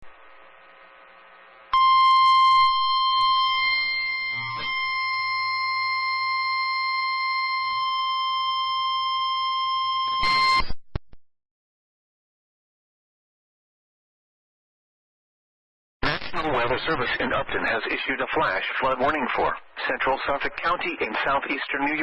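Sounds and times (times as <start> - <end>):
steady alarm tone: 1.7 - 10.6
static burst and clicks: 16.0 - 17.7.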